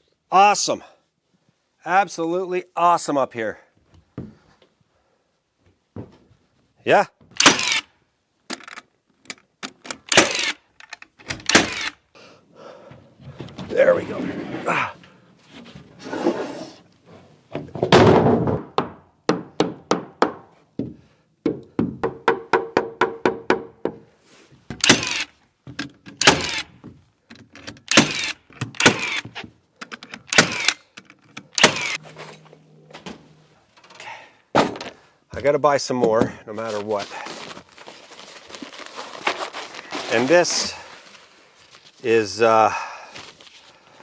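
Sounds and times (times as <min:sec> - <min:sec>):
hammer thuds on wood: 0:17.8 - 0:24.0, 0:34.5 - 0:35.0.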